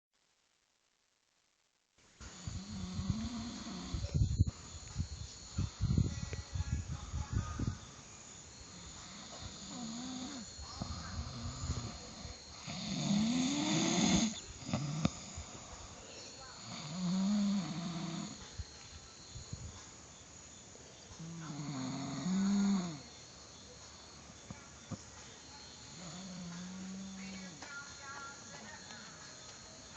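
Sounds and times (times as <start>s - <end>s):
person snoring: 2.2s - 4.5s, 8.7s - 18.4s, 21.2s - 23.1s, 25.9s - 27.4s.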